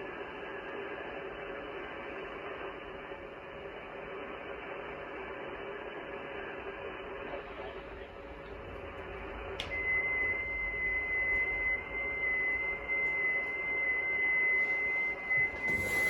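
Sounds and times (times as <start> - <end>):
radio receiver hiss: 7.2 - 16.0
steady high tone: 7.4 - 16.0.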